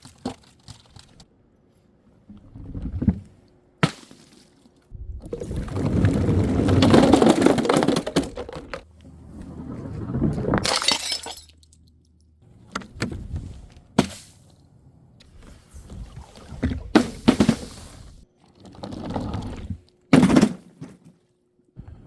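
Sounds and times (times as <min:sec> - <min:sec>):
glass bottles shattering: 0:10.6 - 0:11.7.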